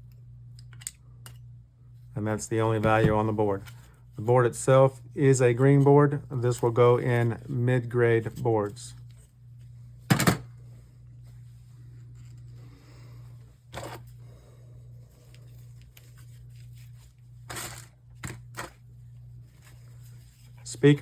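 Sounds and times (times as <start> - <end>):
low hum: 0.0 - 21.0.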